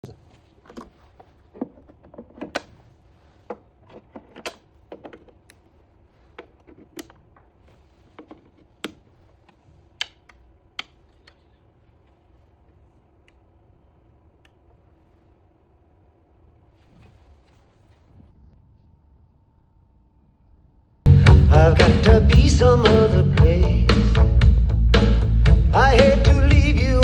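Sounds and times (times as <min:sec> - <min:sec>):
light clicks and knocks: 0:00.0 - 0:11.5
faint steady hum: 0:00.0 - 0:27.0.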